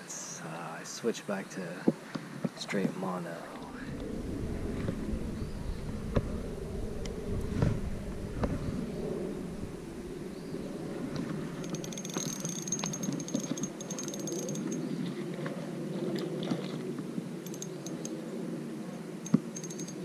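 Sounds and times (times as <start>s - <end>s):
rapid high-pitched ticking: 19.5s - 20.0s.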